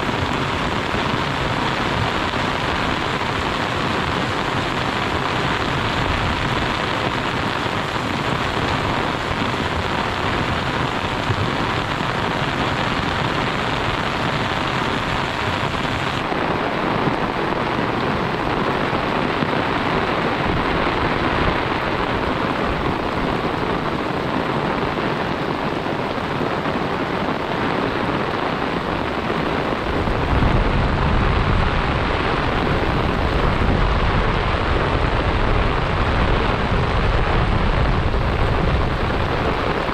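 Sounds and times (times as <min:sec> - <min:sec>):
heavy rain falling: 0:00.0 - 0:39.9
low rumble: 0:29.8 - 0:39.7.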